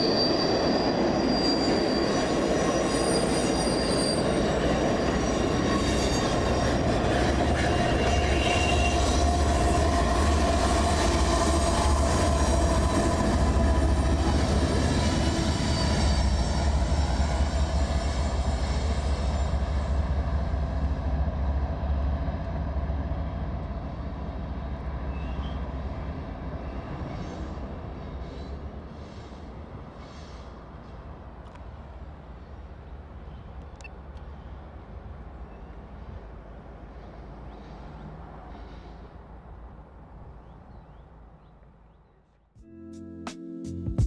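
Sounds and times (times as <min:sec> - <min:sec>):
high wheel squeal: 0:00.0 - 0:20.1
train wheels rumbling on rails: 0:00.0 - 0:41.0.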